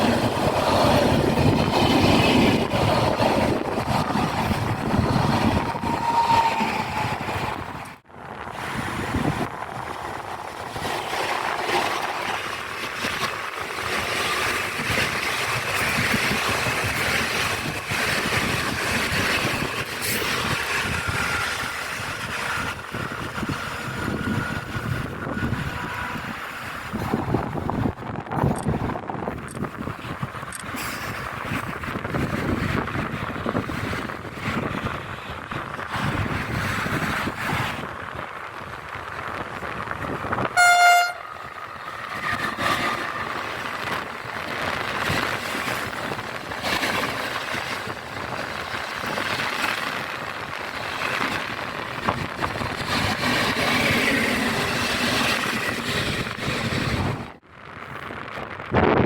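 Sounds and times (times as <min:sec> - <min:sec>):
train rumbling past: 0:00.0 - 0:59.0
train horn toot: 0:25.6 - 0:26.4, 0:40.5 - 0:41.4.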